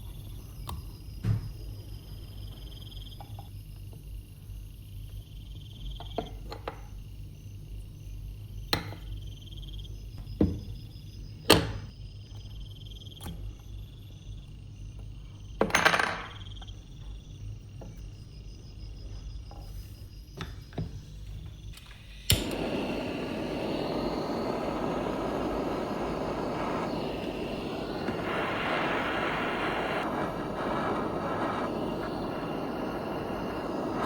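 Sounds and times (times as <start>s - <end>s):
faint steady hum: 16.3s - 34.0s.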